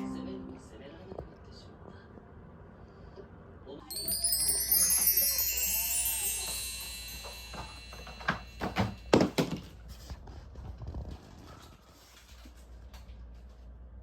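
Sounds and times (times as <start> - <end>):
chime glissando: 3.9 - 9.5.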